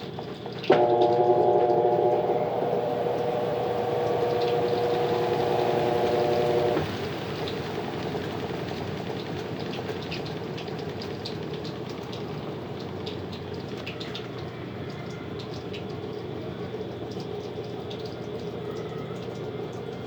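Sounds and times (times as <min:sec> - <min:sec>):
washing machine motor whine: 0:00.5 - 0:09.1
washing machine drum turning: 0:00.7 - 0:07.7.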